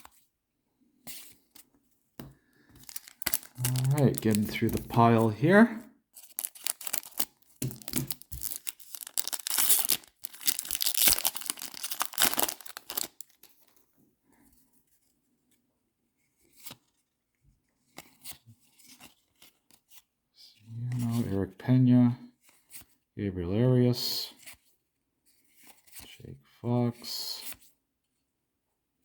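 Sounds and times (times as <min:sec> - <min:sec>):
cards being handled: 0:01.0 - 0:05.4, 0:06.2 - 0:13.8
foil wrapper tearing and crinkling: 0:02.8 - 0:05.2, 0:06.2 - 0:13.8.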